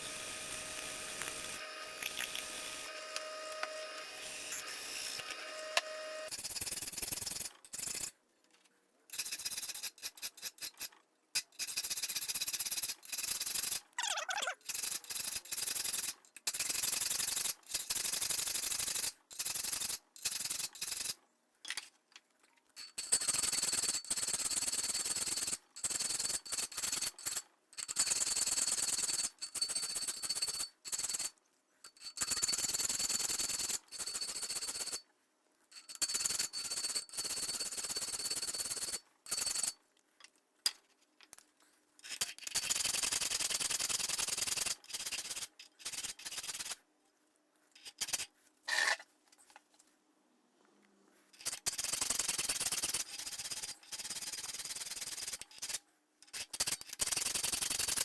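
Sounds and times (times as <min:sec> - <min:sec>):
hand file rasping on steel: 0:48.1 - 0:49.0.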